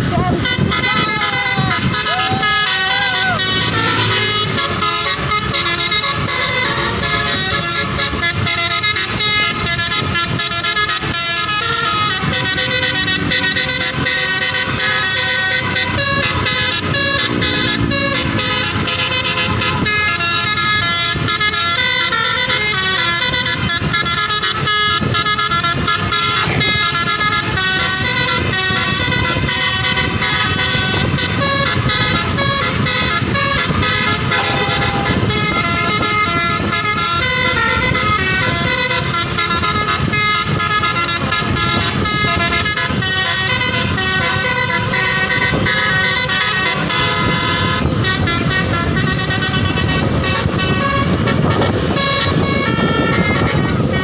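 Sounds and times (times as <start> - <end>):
bus engine: 0.0 - 54.0
bus horns playing musical notes: 0.0 - 54.0
road noise: 0.0 - 54.0.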